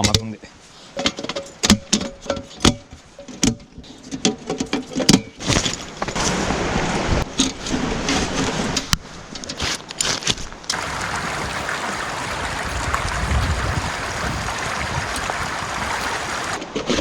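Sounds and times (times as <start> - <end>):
river water rushing: 10.7 - 16.6.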